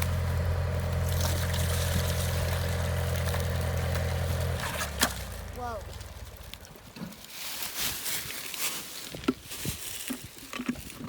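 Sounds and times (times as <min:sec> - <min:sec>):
engine idling: 0:00.0 - 0:07.2.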